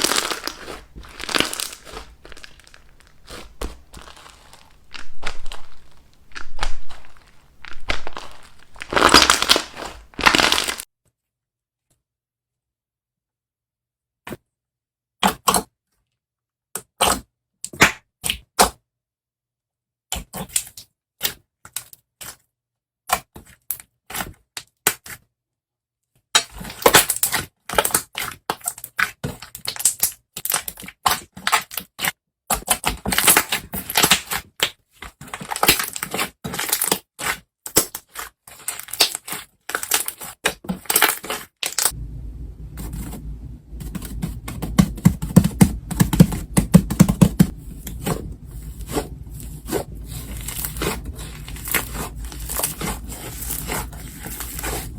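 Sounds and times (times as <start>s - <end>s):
slime clicking and crackling: 0.0s - 10.9s, 37.7s - 42.0s, 43.9s - 54.9s
steady low hum: 41.9s - 54.9s.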